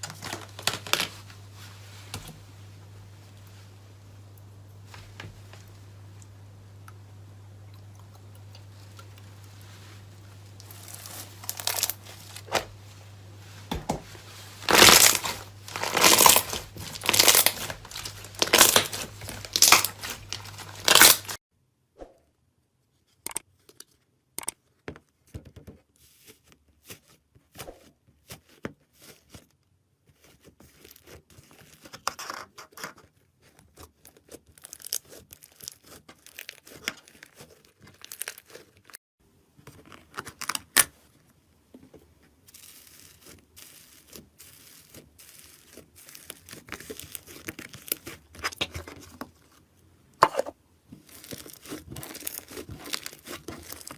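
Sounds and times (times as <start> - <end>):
low steady hum: 0.0 - 21.4
slime clicks and crackles: 14.7 - 21.4, 51.0 - 53.9
slime strokes: 42.4 - 48.5, 51.0 - 53.9.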